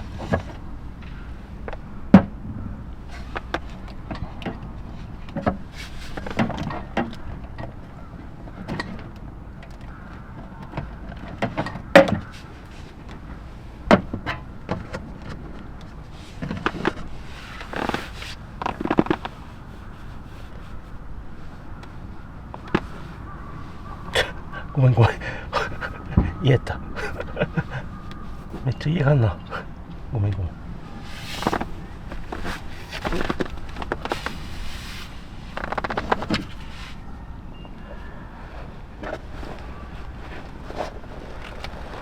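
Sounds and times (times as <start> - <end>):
rustling: 3.0 - 7.4, 11.3 - 26.4, 29.9 - 42.0.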